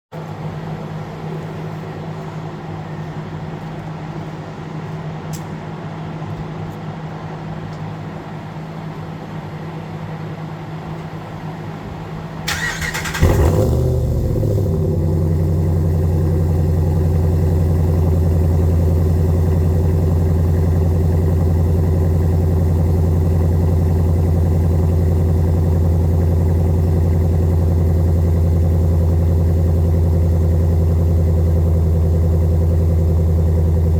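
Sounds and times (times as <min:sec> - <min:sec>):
car engine starting and idling: 0:12.5 - 0:33.9
steady hum: 0:13.2 - 0:33.9.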